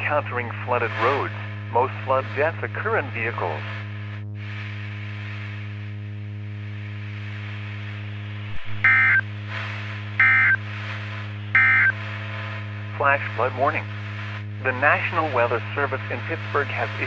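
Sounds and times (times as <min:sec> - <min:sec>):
low electrical hum: 0:00.0 - 0:17.0
short digital data bursts: 0:08.6 - 0:09.2, 0:10.2 - 0:10.6, 0:11.6 - 0:12.0.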